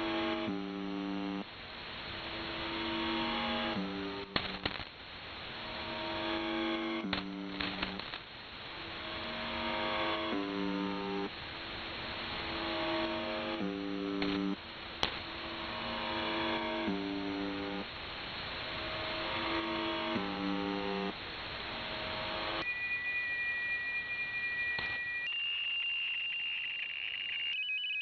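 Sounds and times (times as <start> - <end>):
low buzzing tone: 0.0 - 1.4, 2.4 - 4.6, 8.9 - 11.3, 12.2 - 14.6, 15.3 - 17.8, 18.8 - 25.2
radio static hiss: 0.0 - 22.6
high whistle tones: 22.6 - 28.0.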